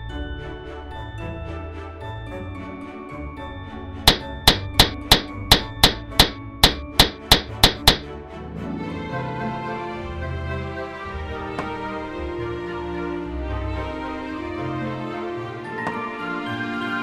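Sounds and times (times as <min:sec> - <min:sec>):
soft background music: 0:00.0 - 0:17.0
hammer tapping: 0:04.1 - 0:08.1.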